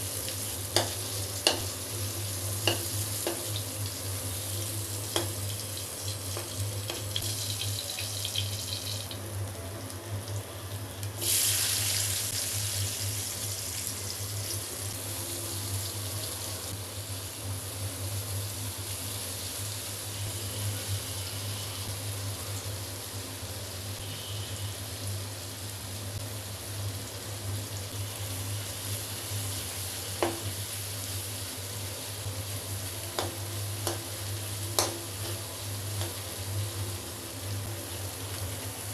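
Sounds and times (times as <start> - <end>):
vegetable slices sizzling in oil: 0.0 - 38.9.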